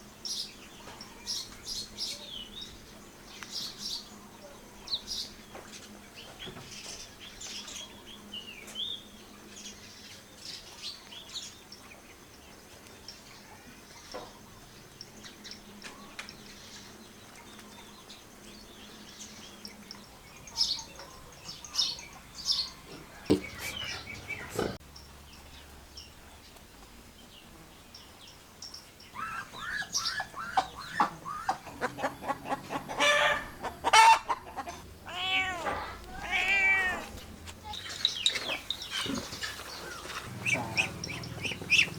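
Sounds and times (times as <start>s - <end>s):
high animal calls: 22.7s - 24.8s, 29.2s - 41.9s.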